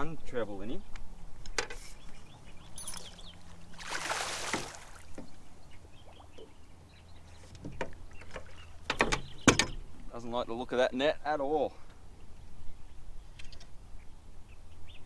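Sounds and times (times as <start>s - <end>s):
water splash: 2.8s - 5.3s.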